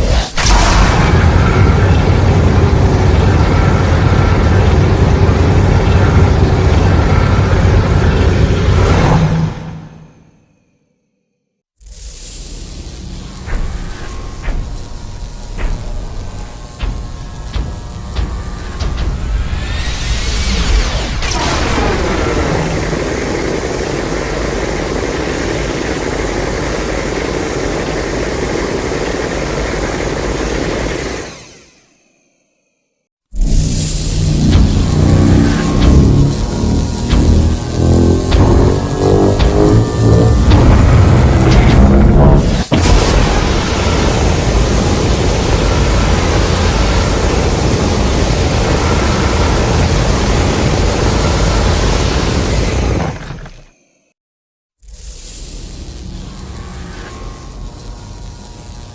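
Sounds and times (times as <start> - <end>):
rushing rumbling noise: 0.0 - 10.3, 12.0 - 31.2, 33.4 - 53.2
monster rushing roar with deep rumble: 34.3 - 47.2.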